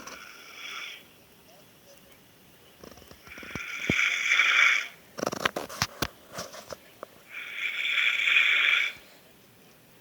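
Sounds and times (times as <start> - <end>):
snoring hissing breath: 0.0 - 1.0, 3.4 - 4.9, 7.3 - 9.2.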